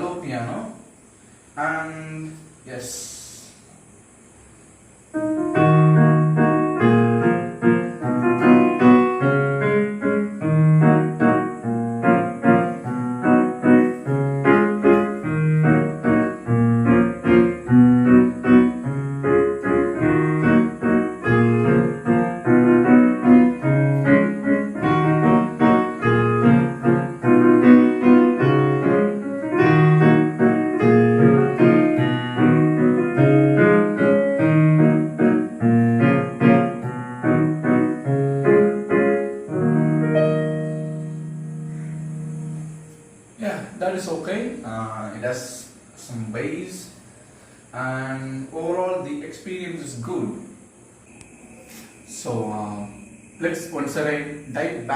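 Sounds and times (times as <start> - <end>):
electronic keyboard piano melody: 5.2 - 44.6.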